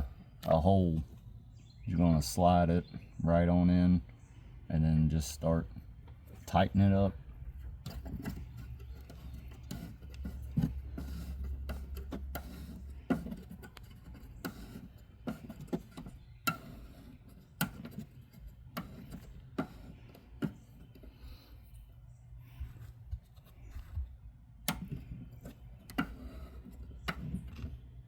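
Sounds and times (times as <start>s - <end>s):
plastic screw clicking: 24.7s - 27.6s.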